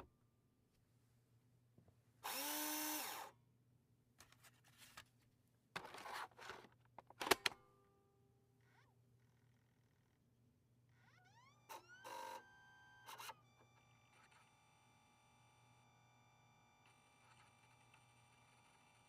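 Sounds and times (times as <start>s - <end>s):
small motor whining: 2.2s - 3.3s, 11.1s - 19.0s.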